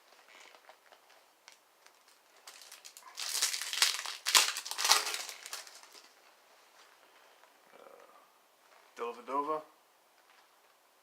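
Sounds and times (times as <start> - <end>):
foil wrapper crinkling: 0.2 - 6.2.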